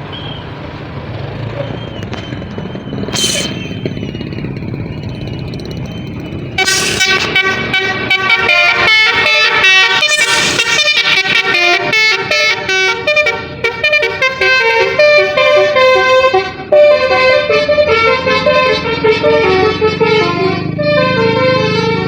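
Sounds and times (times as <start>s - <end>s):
engine and road rumble: 0.0s - 22.0s
bus horn playing fast melody: 6.5s - 22.0s.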